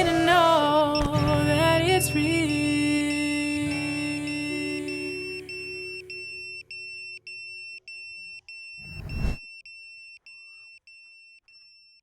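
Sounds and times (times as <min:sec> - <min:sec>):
short rush of noise: 0:08.8 - 0:09.4.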